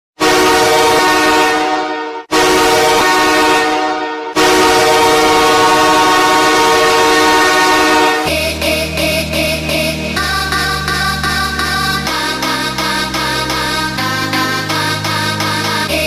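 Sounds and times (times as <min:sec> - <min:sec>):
goal horn blasts: 0:00.2 - 0:08.3.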